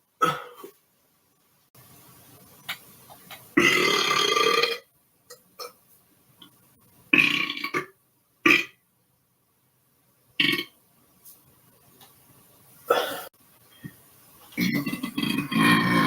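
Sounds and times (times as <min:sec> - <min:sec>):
person belching: 0:03.6 - 0:04.8, 0:14.6 - 0:16.0.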